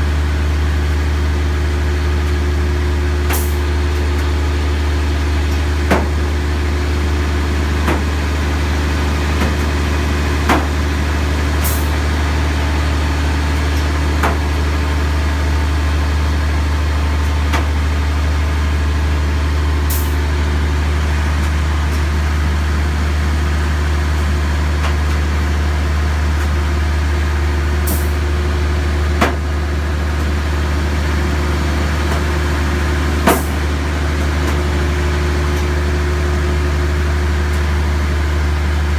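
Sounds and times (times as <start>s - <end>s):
crane machinery humming: 0.0s - 38.9s.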